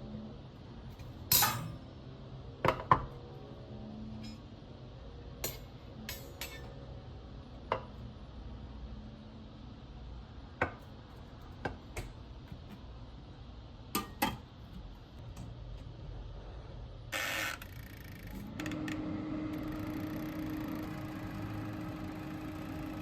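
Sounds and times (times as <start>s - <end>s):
utensils and dishes clinking: 1.3s - 1.8s, 5.4s - 6.7s.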